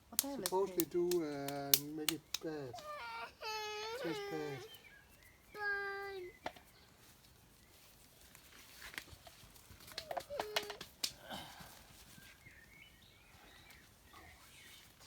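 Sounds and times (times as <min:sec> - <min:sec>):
small bird-like chirps: 0:02.2 - 0:08.0
faint sharp clicks and knocks: 0:08.8 - 0:11.2.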